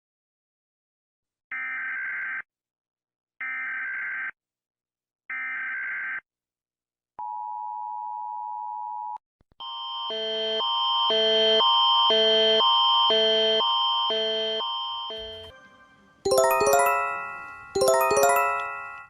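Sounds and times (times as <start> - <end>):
alarm tone: 9.6 - 15.5, 16.3 - 19.0
two-tone attention signal: 14.3 - 15.5.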